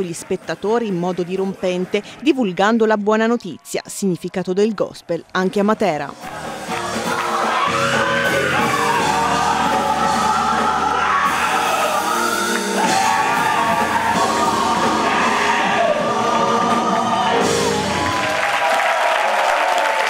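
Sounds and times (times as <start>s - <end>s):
gospel singing with band: 6.2s - 18.4s.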